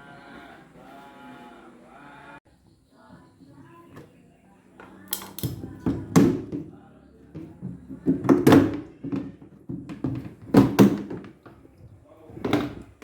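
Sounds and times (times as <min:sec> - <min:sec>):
knocks and thuds of handling: 0:05.4 - 0:13.0.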